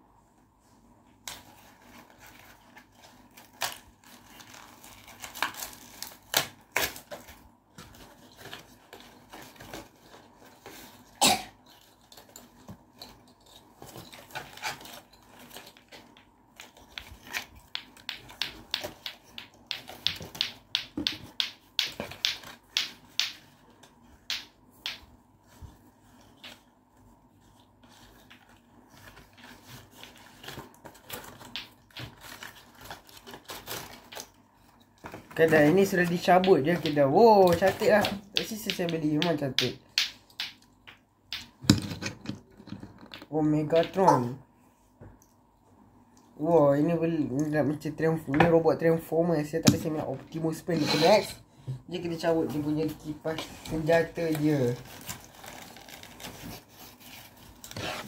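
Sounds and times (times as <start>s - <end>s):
packaging crinkling: 2.0s - 7.4s, 54.4s - 58.0s.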